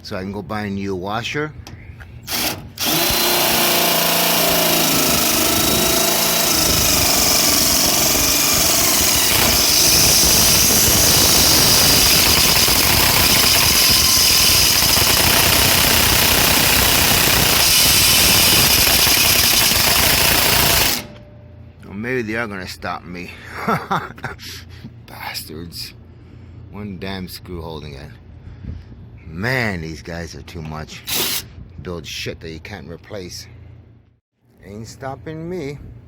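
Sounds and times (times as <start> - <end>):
power drill grinding whir: 2.3 - 21.2, 31.1 - 31.5.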